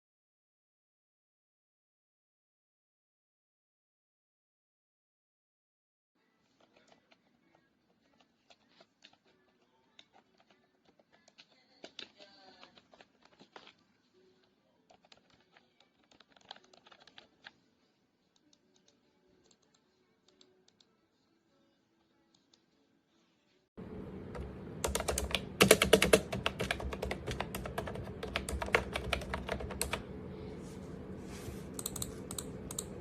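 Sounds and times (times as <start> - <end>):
keyboard key clicks: 31.8 - 32.9.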